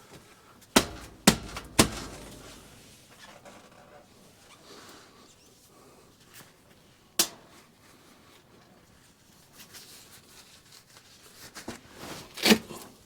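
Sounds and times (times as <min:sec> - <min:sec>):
sharp knock on metal pipe: 0:00.8 - 0:02.8
taps and scrapes on metal: 0:00.8 - 0:02.9.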